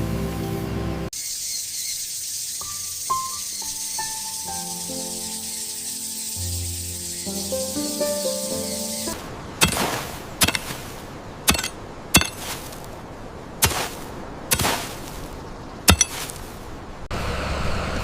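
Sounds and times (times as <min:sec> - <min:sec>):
music: 0:00.0 - 0:01.1, 0:03.1 - 0:09.2.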